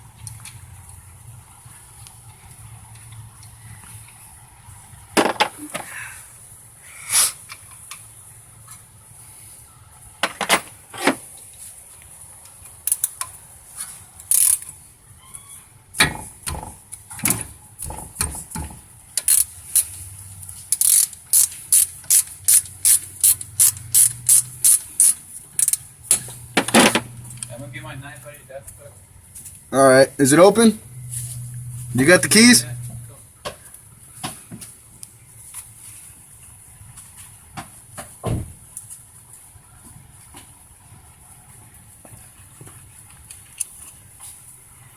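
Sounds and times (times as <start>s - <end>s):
ratchet wrench clicking: 12.9s - 13.2s, 14.2s - 14.7s, 19.2s - 20.0s, 20.7s - 26.3s.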